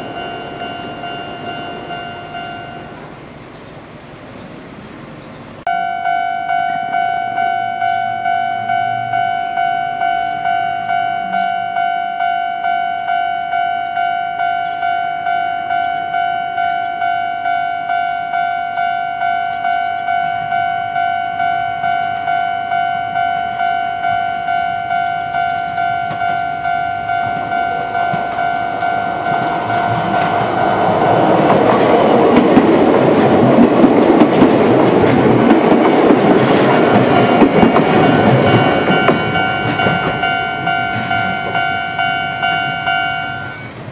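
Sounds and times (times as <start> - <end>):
level-crossing warning bell: 0.0 - 3.4, 5.7 - 43.9
electric train passing: 0.0 - 43.9
train wheels clacking on rails: 19.6 - 43.9.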